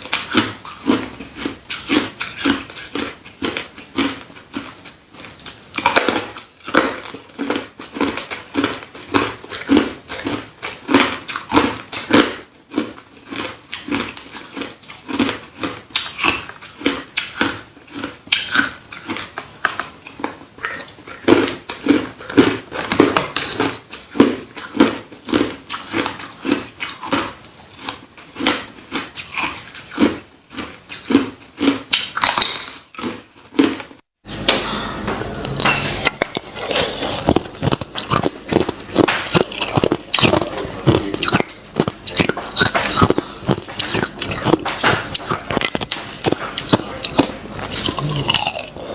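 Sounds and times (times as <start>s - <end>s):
ice crunching while chewed: 0.0s - 34.0s, 35.6s - 48.9s.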